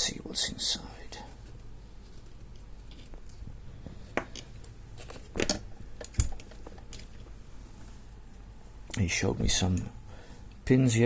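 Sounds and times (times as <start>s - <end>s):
tools clicking and knocking: 5.3s - 7.2s.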